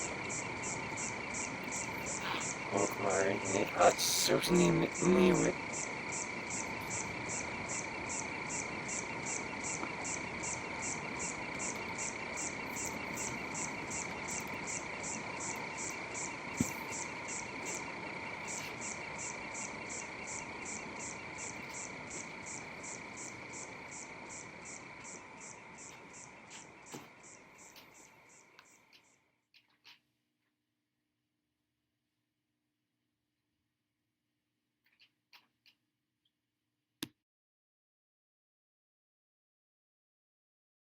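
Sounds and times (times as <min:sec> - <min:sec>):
trilling drone of frogs and insects: 0:00.0 - 0:30.0, 0:34.8 - 0:35.8.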